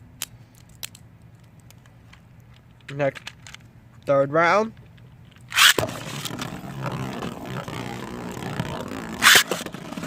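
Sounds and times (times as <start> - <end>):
spinning top launcher rip: 5.5 - 10.0
spinning tops whirring and scraping: 5.5 - 10.0.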